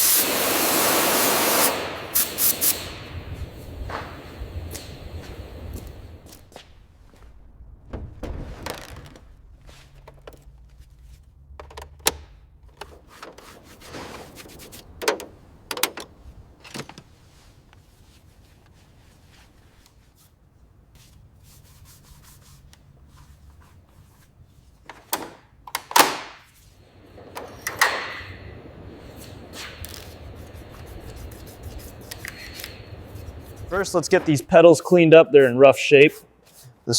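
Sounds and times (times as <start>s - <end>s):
sanding and rubbing: 12.9s - 14.9s, 21.0s - 24.4s, 28.6s - 34.4s, 35.4s - 36.8s.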